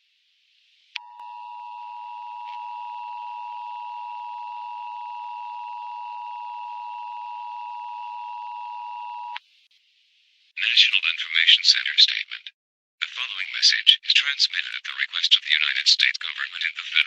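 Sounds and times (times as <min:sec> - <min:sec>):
faint high tone: 0:01.0 - 0:09.4.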